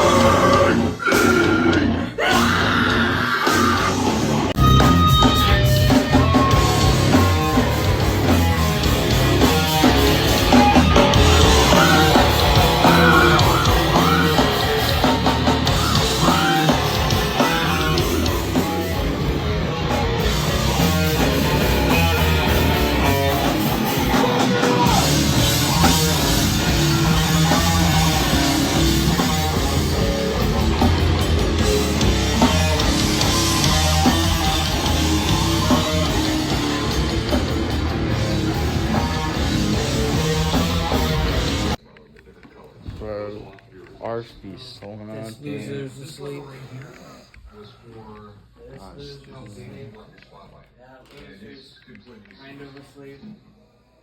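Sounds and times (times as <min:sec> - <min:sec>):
loud punk rock music: 0:00.0 - 0:41.8.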